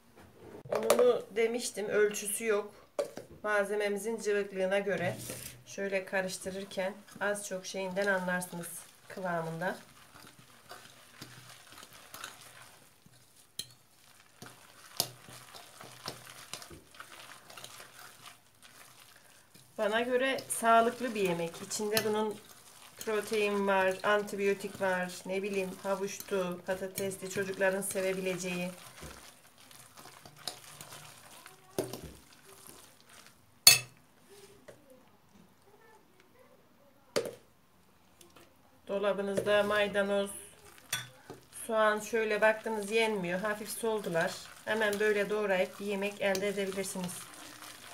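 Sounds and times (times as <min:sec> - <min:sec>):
utensil stirring wet batter: 0:03.0 - 0:36.0, 0:38.1 - 0:47.9.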